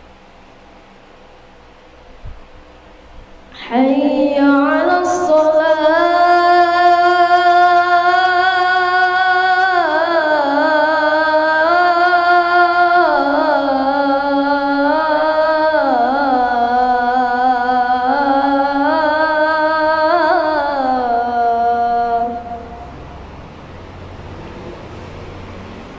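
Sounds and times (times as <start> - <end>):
child chanting call to prayer: 3.5 - 23.3.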